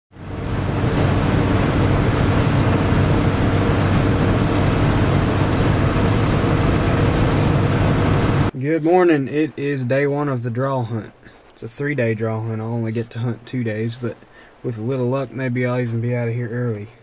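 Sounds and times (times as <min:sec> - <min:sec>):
vehicle engine drone: 0:00.1 - 0:08.5
road noise: 0:00.1 - 0:08.6.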